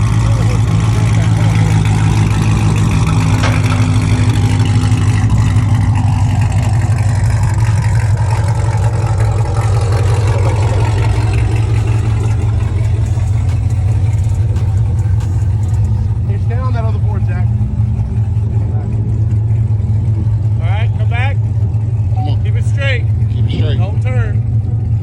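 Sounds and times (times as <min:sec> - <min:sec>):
vehicle engine humming: 0:00.0 - 0:25.0.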